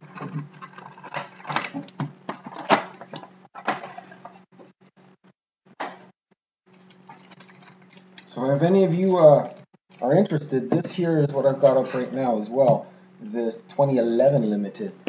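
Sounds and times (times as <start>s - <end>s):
packaging crinkling and scraping: 0.0s - 4.1s, 6.7s - 8.1s
low electrical hum: 6.7s - 15.0s.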